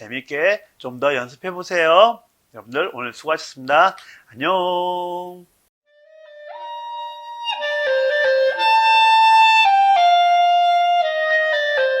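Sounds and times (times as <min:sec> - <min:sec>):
slow clarinet melody: 0:05.9 - 0:12.0.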